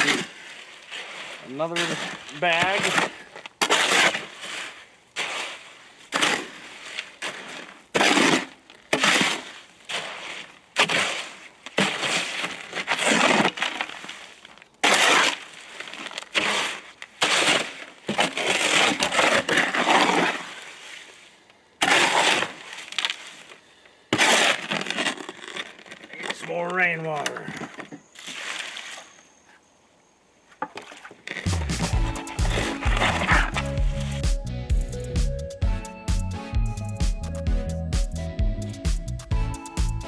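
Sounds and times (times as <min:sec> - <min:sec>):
tool scraping wet cement: 0:00.0 - 0:29.6, 0:30.6 - 0:34.2.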